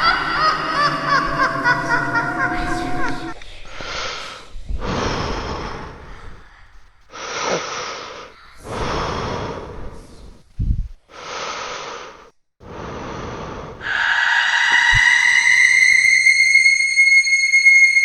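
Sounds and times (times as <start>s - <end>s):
high-pitched tone: 0.0s - 3.4s, 13.8s - 18.0s
heavy rasping breathing: 0.0s - 10.4s, 11.1s - 15.6s.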